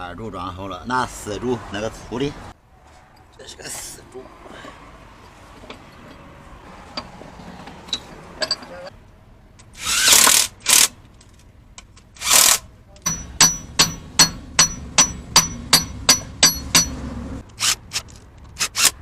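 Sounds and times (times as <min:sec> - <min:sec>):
hammer tapping metal: 0:13.0 - 0:17.1
hammer ringing on metal: 0:13.1 - 0:17.1.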